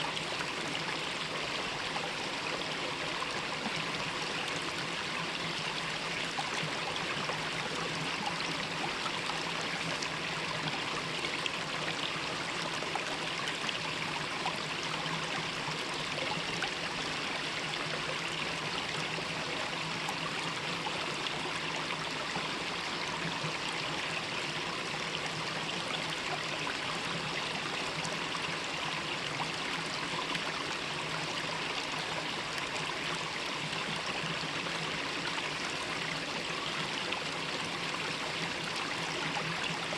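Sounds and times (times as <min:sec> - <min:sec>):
stream flowing: 0:00.0 - 0:39.9.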